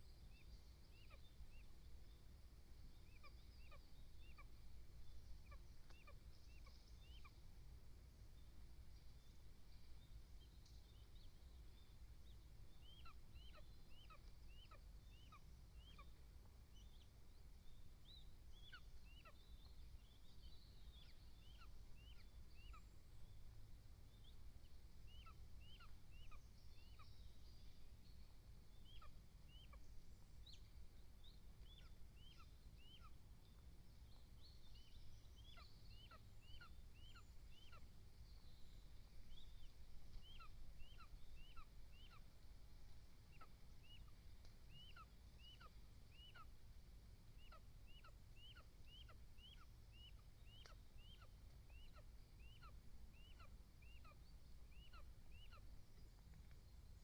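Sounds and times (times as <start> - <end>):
bird calling: 12.8 - 16.2, 38.6 - 42.3, 43.3 - 46.6, 47.4 - 56.4.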